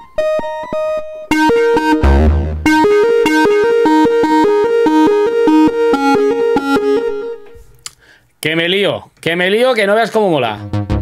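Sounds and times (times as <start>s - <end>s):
synthesizer playing: 0.0s - 7.7s
falling synth sweep: 1.3s - 7.4s.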